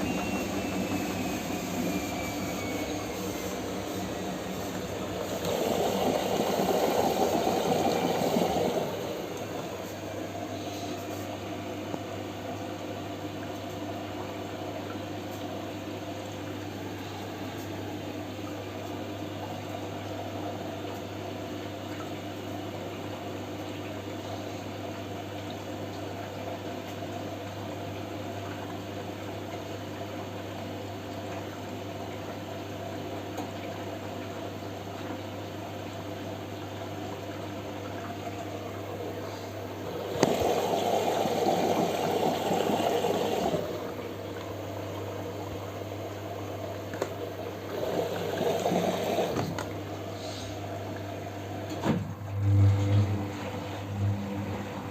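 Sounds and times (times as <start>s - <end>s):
water rushing into drum: 0.0s - 12.5s, 36.3s - 54.9s
washing machine hum: 0.0s - 54.9s.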